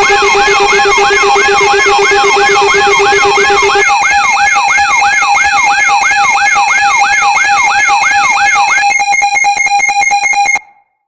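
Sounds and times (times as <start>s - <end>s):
pulsing electronic beeps: 0.0s - 5.0s
siren whooping: 0.0s - 9.3s.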